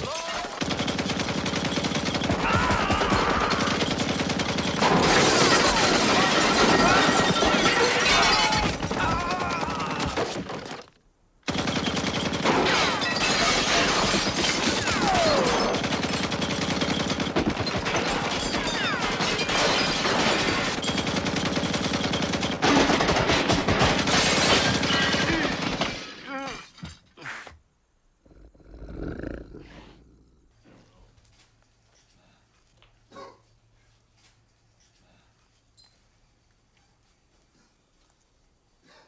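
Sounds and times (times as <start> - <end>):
machine-gun fire: 0.4 - 10.8, 11.4 - 26.0.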